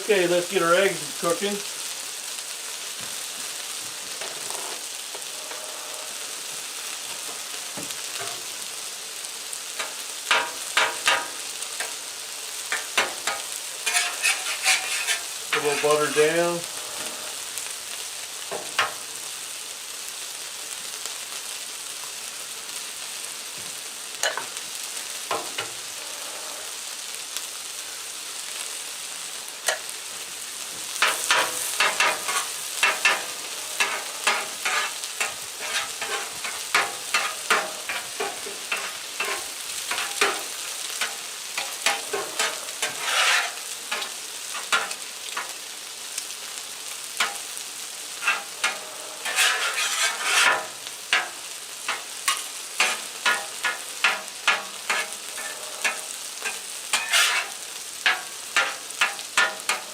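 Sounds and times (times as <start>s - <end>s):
butter and eggs sizzling on griddle: 0.0s - 59.9s
metal spatula scraping and tapping: 7.1s - 8.5s, 9.8s - 12.0s, 12.7s - 16.3s, 24.2s - 24.5s, 25.3s - 25.8s, 29.7s - 29.9s, 31.0s - 45.6s, 47.2s - 47.4s, 48.2s - 59.9s.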